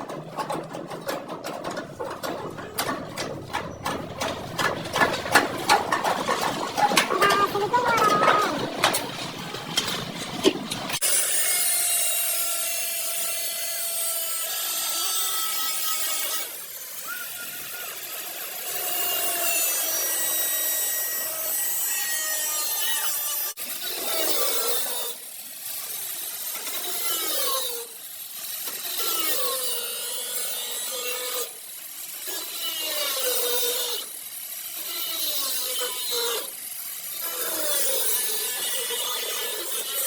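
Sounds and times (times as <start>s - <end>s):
power tool on car body panels: 8.8s - 40.0s.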